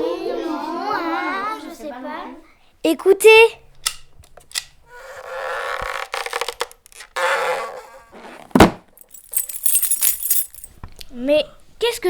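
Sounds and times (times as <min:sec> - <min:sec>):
high jingling shimmer: 0:09.0 - 0:10.7.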